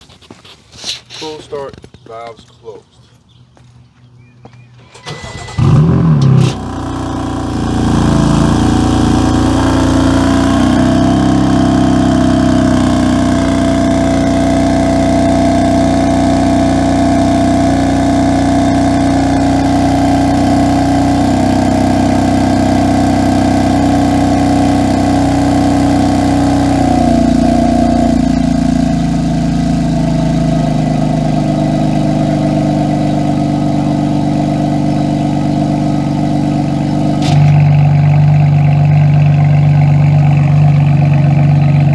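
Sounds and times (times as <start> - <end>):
car engine idling: 4.5 - 41.9.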